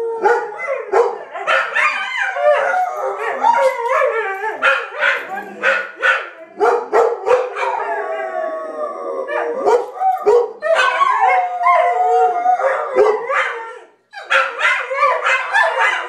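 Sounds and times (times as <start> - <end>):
dog howling: 0.0 - 16.0
dog barking: 0.2 - 2.0, 3.2 - 7.8, 9.3 - 11.0, 14.2 - 16.0.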